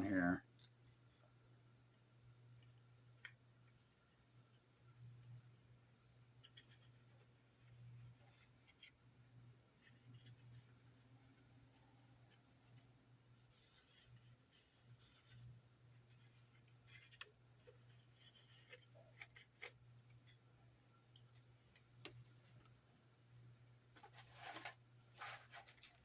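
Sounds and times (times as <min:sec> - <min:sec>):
low steady hum: 0:00.0 - 0:26.0
handling small polystyrene parts: 0:23.9 - 0:26.0.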